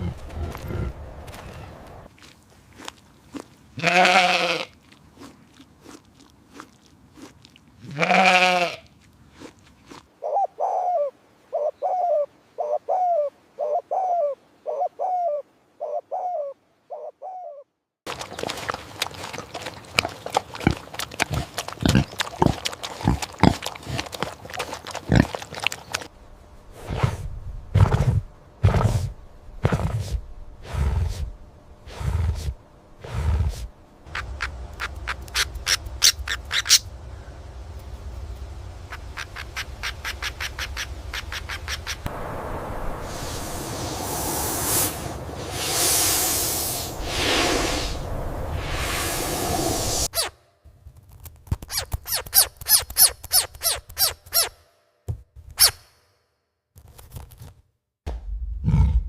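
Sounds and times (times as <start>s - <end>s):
low grunts: 0.0s - 1.5s, 58.6s - 59.0s.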